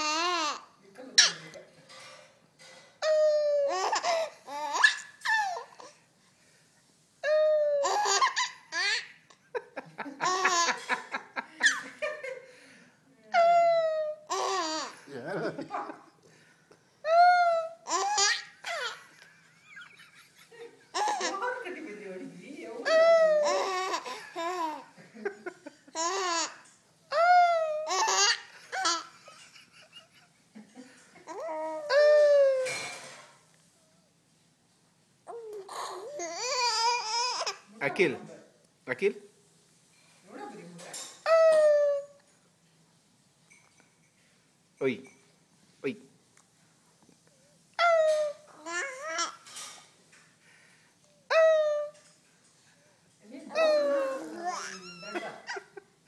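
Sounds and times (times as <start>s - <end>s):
baby laughing: 3.0s - 6.0s, 7.4s - 9.5s, 10.2s - 12.0s, 13.4s - 16.1s, 17.1s - 21.5s, 22.9s - 30.3s.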